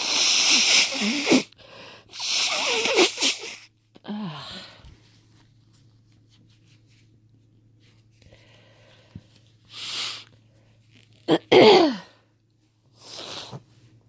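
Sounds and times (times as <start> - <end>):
woman sneezing: 2.2 - 3.6.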